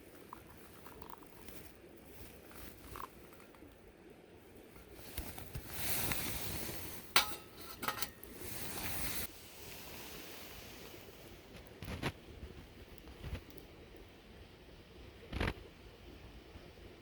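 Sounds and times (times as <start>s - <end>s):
steady hiss: 0.0s - 17.0s
metal dishes clinking: 7.1s - 8.3s.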